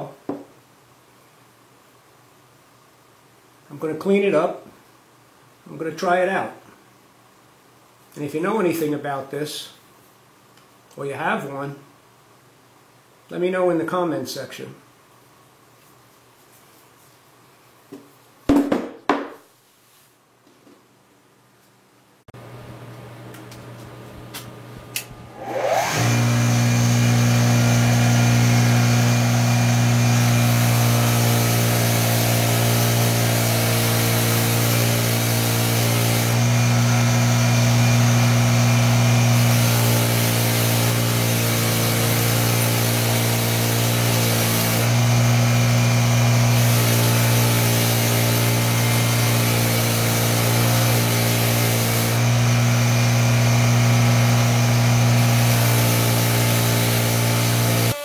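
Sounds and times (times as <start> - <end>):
power tool motor humming: 25.3 - 58.0.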